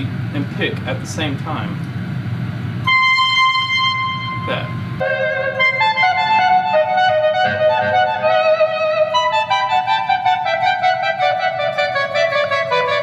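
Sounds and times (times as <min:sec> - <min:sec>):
electric guitar volume swells: 0:02.8 - 0:13.0.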